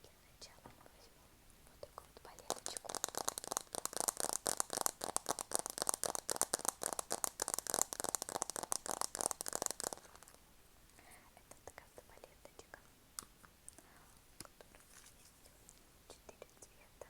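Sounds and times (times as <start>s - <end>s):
rapid dense tapping: 2.4s - 10.3s.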